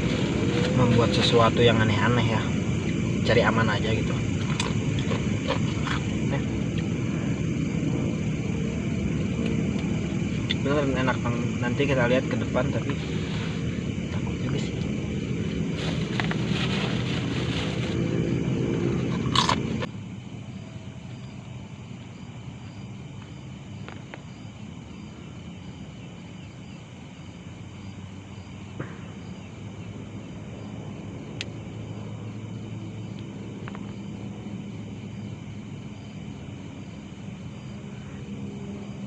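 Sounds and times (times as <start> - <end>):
insects chirping: 0.0 - 39.0
low hum: 0.0 - 39.0
loud rustling: 15.4 - 19.8.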